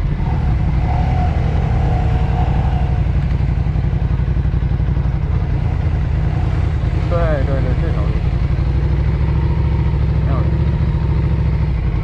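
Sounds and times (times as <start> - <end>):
motorcycle exhaust rumble: 0.0 - 12.0.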